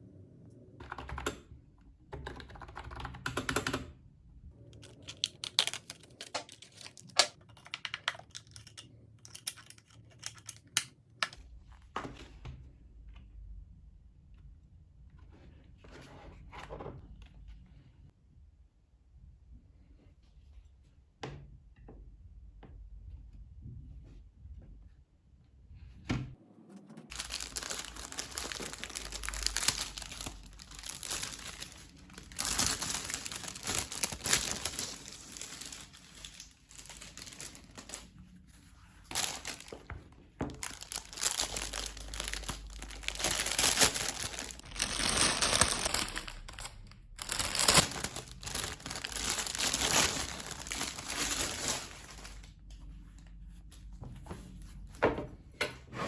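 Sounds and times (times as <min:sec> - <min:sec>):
packaging crinkling and tearing: 0:04.8 - 0:10.8, 0:27.1 - 0:38.2, 0:39.0 - 0:52.5.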